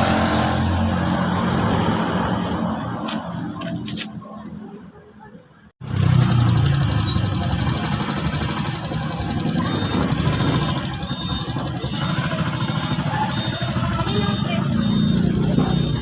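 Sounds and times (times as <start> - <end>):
engine running: 5.8 - 16.0.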